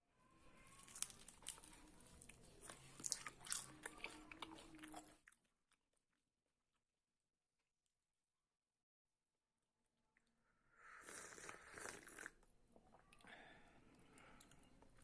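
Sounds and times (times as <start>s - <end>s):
crunching crisp food: 0.5s - 5.4s.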